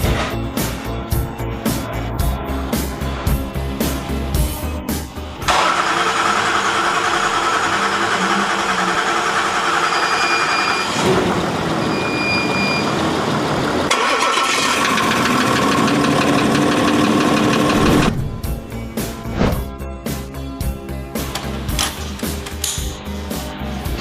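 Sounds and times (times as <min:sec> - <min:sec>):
diesel engine running: 0:05.4 - 0:18.9.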